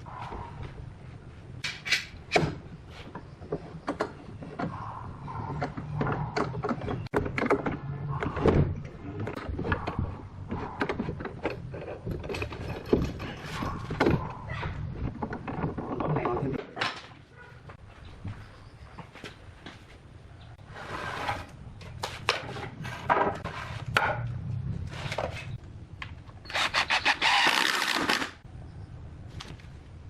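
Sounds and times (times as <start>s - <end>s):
wooden parts knocking and rattling: 1.6s - 17.2s.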